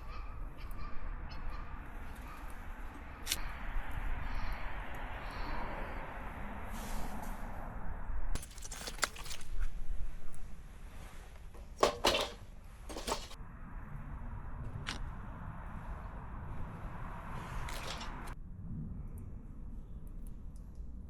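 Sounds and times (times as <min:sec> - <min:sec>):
sharp clinking and clattering: 0:08.4 - 0:09.5, 0:11.6 - 0:13.4, 0:17.7 - 0:18.4.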